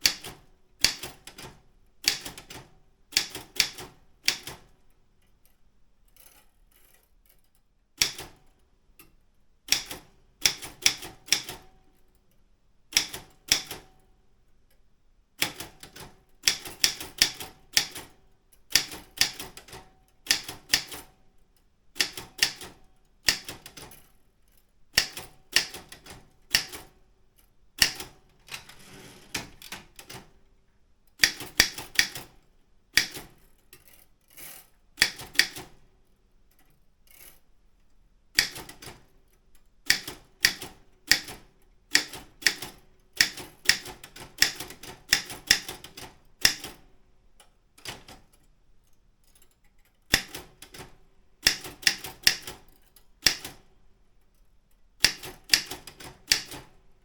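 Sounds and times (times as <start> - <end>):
typewriter keys striking: 27.8 - 30.3, 55.0 - 56.7.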